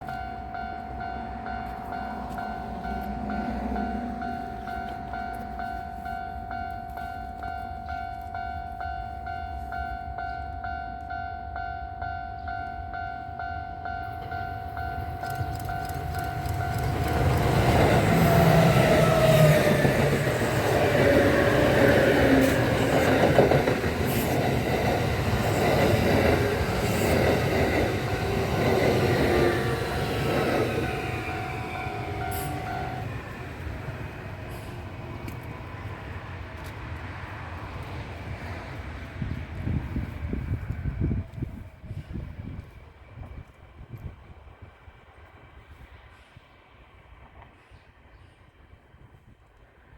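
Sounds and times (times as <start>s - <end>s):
level-crossing warning bell: 0.0s - 35.0s
electric train passing: 0.0s - 49.0s.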